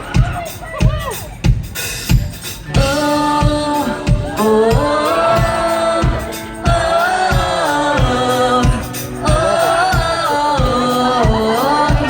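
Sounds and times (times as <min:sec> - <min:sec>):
live pop band: 0:00.0 - 0:12.0
person singing: 0:02.8 - 0:12.0.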